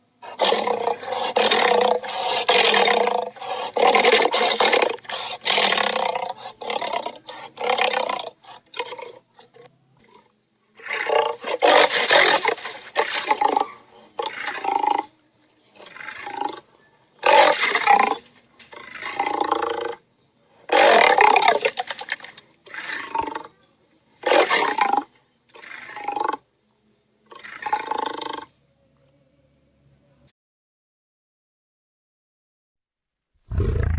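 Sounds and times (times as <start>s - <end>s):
lion roars: 0.2s - 9.2s, 15.8s - 20.0s, 20.7s - 21.7s, 22.7s - 23.5s, 24.2s - 26.4s, 33.5s - 33.9s.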